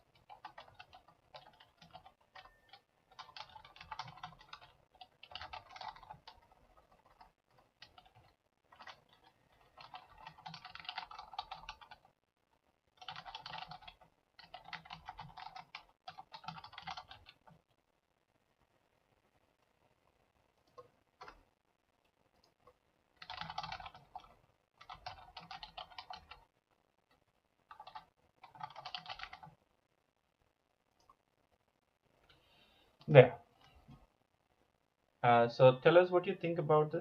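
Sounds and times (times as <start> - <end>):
typing on computer keyboard: 0.0 - 12.2, 12.9 - 17.6, 20.6 - 21.4, 22.4 - 26.5, 27.7 - 29.6.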